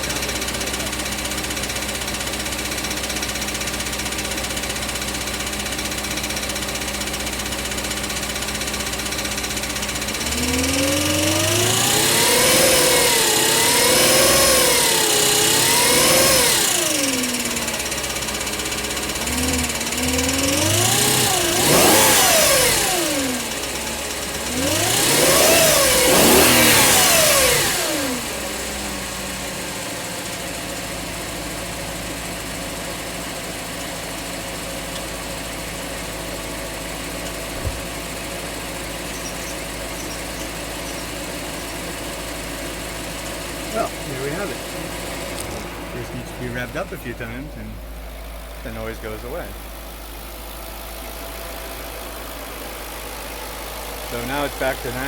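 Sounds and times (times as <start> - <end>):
car engine idling and revving: 0.0 - 55.0
starter gear rattle: 37.2 - 45.7.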